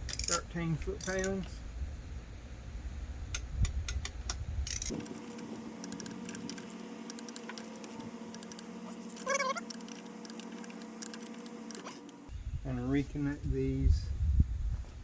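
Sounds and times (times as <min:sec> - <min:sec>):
ratchet wrench clicking: 0:00.0 - 0:00.4, 0:01.0 - 0:01.5, 0:03.3 - 0:11.8.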